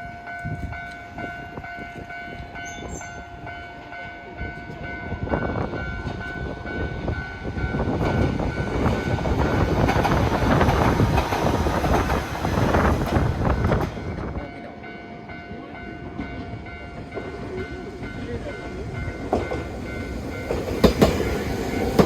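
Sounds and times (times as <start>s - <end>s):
level-crossing bell ringing: 0.0s - 9.7s, 13.4s - 22.0s
train wheels clattering on rails: 4.5s - 14.7s, 15.8s - 22.0s.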